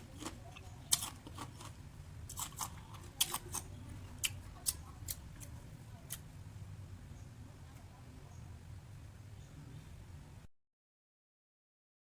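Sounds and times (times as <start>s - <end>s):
sharp crunch of food: 0.0s - 6.3s
soft chewing: 0.0s - 6.4s
low steady hum: 0.0s - 10.5s.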